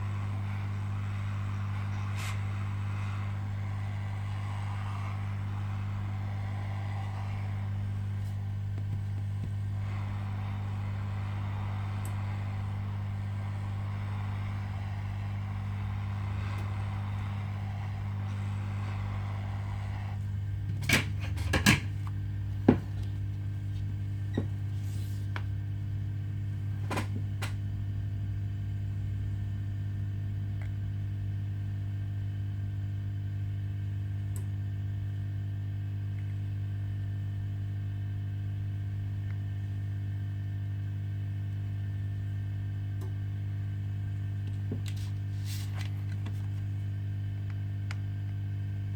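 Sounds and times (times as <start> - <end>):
electrical hum: 0.0 - 48.9
fan hiss: 0.0 - 48.9.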